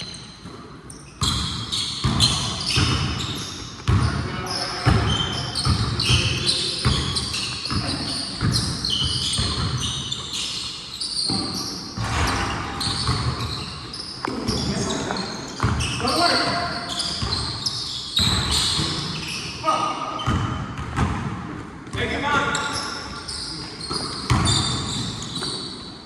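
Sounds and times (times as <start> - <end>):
basketball bouncing on hard court: 0.4 - 4.2, 4.8 - 10.0, 11.3 - 13.7, 20.2 - 22.0, 23.9 - 25.6.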